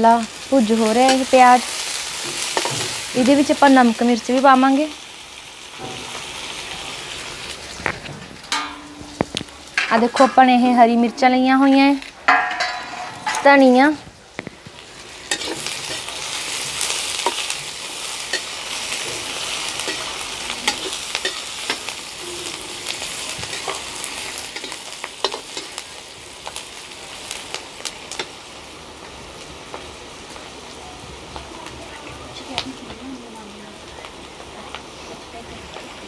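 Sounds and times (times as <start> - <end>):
onions sizzling in hot oil: 0.0 - 36.0
spoon stirring and clicking on pan: 23.4 - 25.8.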